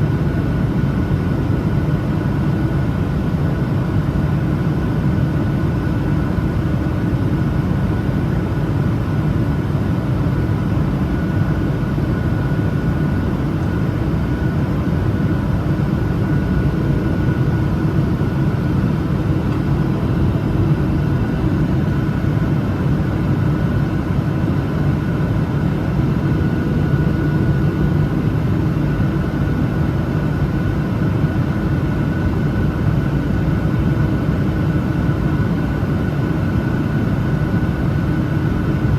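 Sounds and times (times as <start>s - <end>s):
faint steady whine: 0.0s - 38.9s
jet engines droning: 0.0s - 38.9s.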